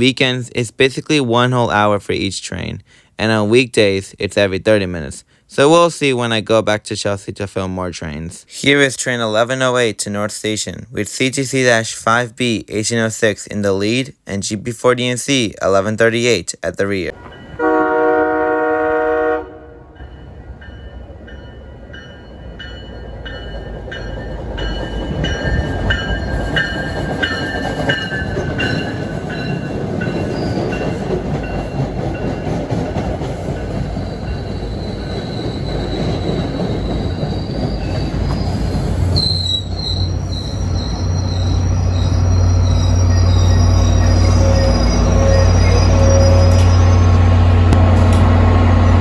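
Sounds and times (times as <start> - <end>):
diesel locomotive engine drone: 17.1 - 49.0
rumble of train cars: 17.1 - 49.0
train horn blast: 17.2 - 20.0.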